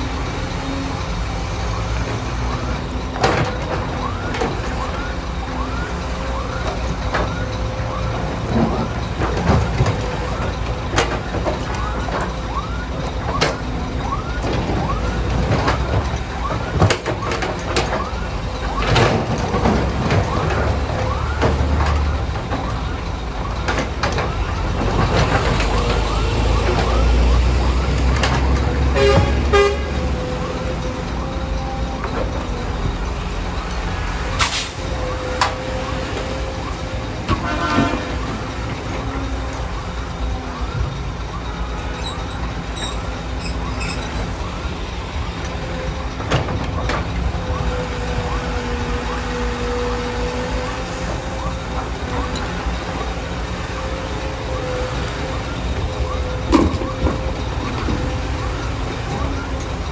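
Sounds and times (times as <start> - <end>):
diesel machinery rumbling: 0.0 - 59.9.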